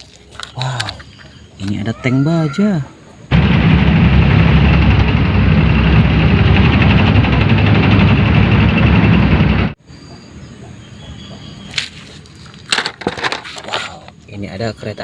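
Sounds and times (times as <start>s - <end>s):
tank engine rumble: 3.3s - 9.8s.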